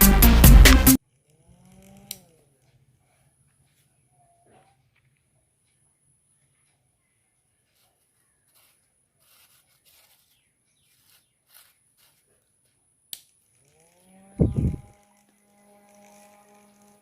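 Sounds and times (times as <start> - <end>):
small electric fan motor whining: 1.5 - 2.4, 13.2 - 17.0.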